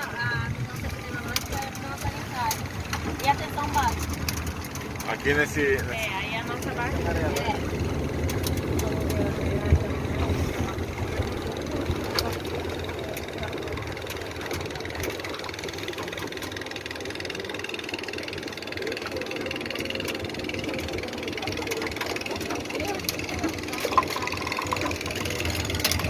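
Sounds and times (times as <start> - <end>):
boat motor humming: 0.0 - 26.0.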